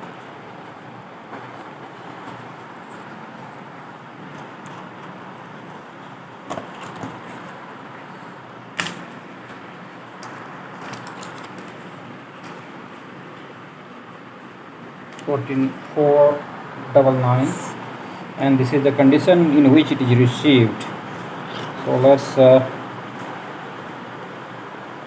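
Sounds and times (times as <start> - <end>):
steady background hiss: 0.0 - 25.0
packaging clicks and rustles: 10.2 - 12.6.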